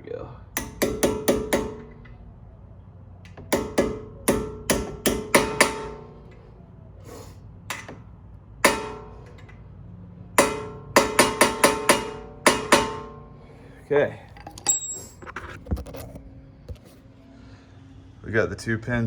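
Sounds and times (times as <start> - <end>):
hammer striking metal: 0.6 - 2.1, 3.4 - 6.2, 8.6 - 9.5, 10.4 - 13.4.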